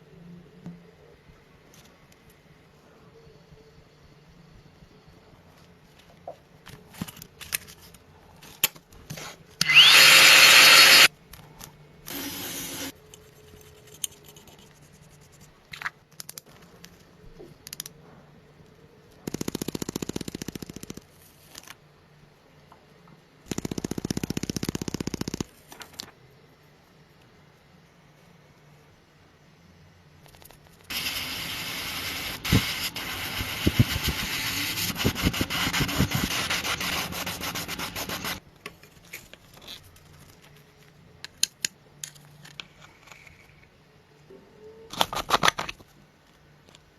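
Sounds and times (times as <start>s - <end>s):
power tool whirring: 9.6s - 11.1s, 12.1s - 12.9s.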